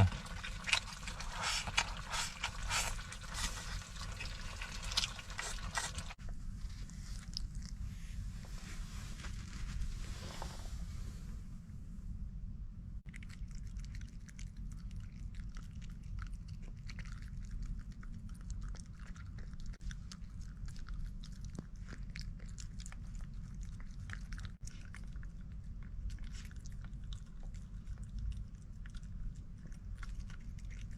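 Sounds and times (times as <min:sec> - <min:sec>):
person chewing food: 0:00.0 - 0:06.2, 0:13.0 - 0:30.9
steady low hum: 0:00.0 - 0:30.9.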